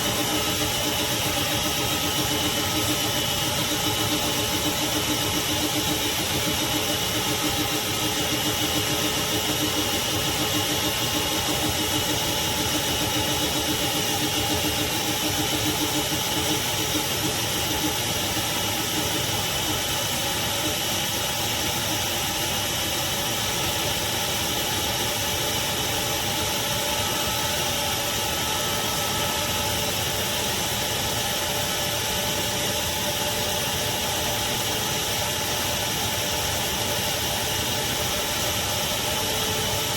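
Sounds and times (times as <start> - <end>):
shop vacuum running: 0.0 - 39.9.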